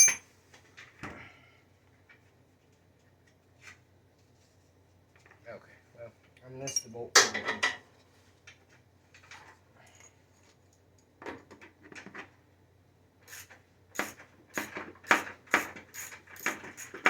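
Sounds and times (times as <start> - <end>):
wrench clinking on metal: 0.0 - 0.2, 6.6 - 7.0.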